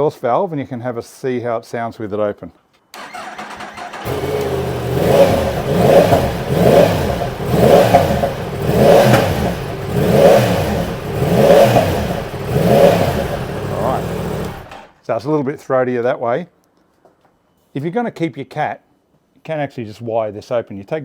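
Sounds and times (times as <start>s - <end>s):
motorcycle engine revving: 3.0s - 14.9s.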